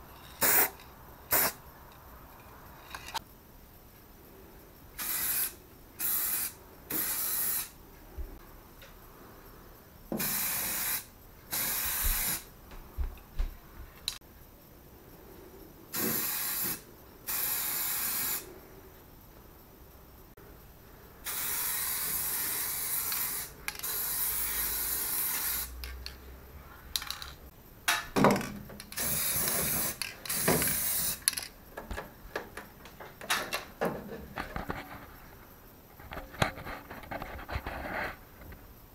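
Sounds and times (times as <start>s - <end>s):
spray paint can hissing: 0.2s - 1.6s, 5.0s - 7.8s, 10.2s - 12.5s, 15.9s - 18.5s, 21.2s - 26.1s, 28.9s - 31.5s
sharp clicks and knocks: 29.8s - 35.1s.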